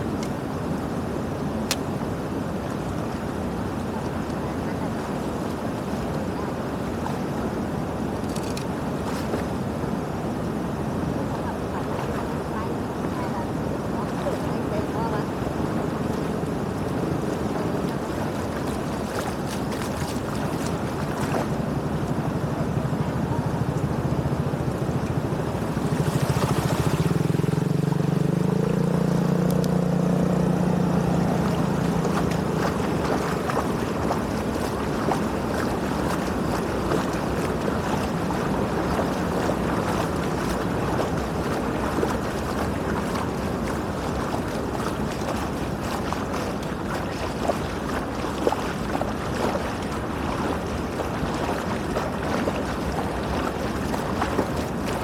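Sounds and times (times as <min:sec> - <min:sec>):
water rushing through outlet: 0:00.0 - 0:55.0
motor hum: 0:11.4 - 0:55.0.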